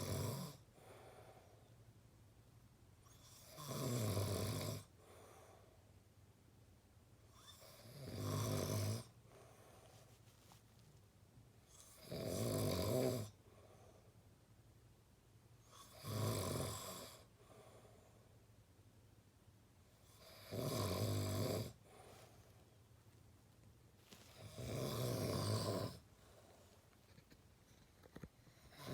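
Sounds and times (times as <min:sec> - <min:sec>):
person snoring: 0:00.0 - 0:00.6, 0:07.5 - 0:09.1, 0:11.9 - 0:13.4, 0:20.2 - 0:22.2, 0:24.4 - 0:26.1, 0:28.6 - 0:28.9.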